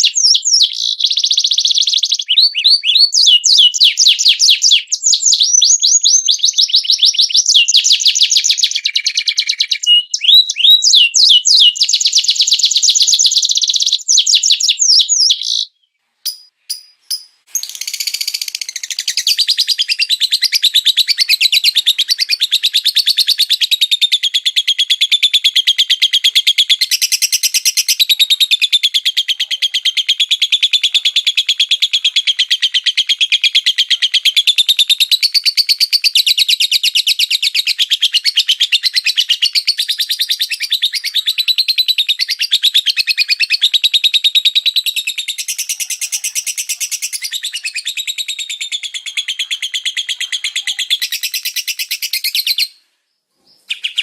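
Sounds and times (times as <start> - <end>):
small bird chirping and trilling: 0.0 - 54.0.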